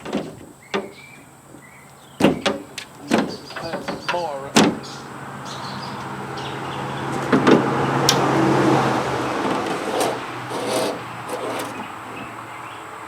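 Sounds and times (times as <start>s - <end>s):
glass scraping in door channels: 0.0s - 5.1s, 7.0s - 12.8s
sharp knocks: 2.2s - 5.0s, 7.1s - 8.3s.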